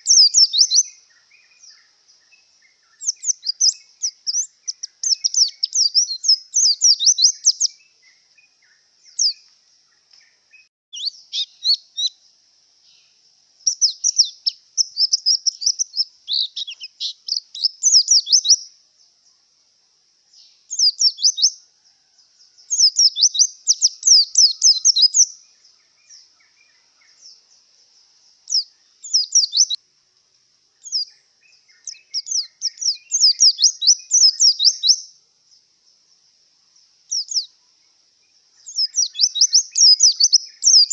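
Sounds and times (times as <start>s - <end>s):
bird twittering: 0.0s - 12.2s, 12.8s - 18.7s, 20.4s - 21.6s, 22.7s - 27.5s, 28.5s - 29.8s, 30.8s - 35.1s, 37.1s - 37.5s, 38.6s - 40.9s.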